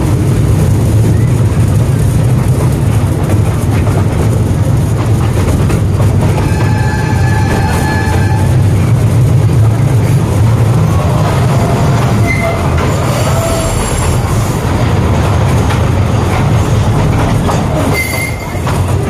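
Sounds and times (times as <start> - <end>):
toy train rumbling on track: 0.0 - 19.0
high wheel squeals: 6.4 - 8.8, 10.9 - 14.6, 17.8 - 18.9.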